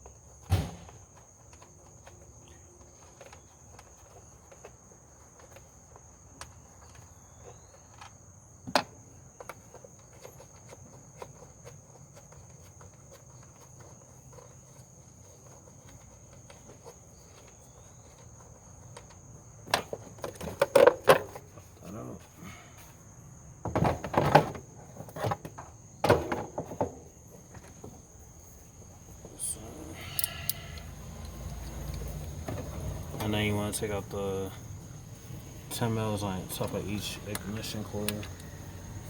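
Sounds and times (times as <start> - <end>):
hand tools knocking and clanking: 35.7 - 38.6.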